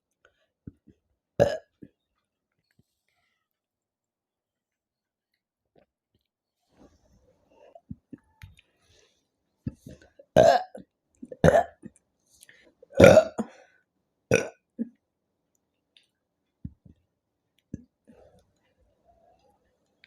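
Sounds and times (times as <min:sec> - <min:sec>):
woman burping: 0:01.4 - 0:01.7, 0:10.4 - 0:11.9, 0:12.9 - 0:13.5, 0:14.3 - 0:15.0.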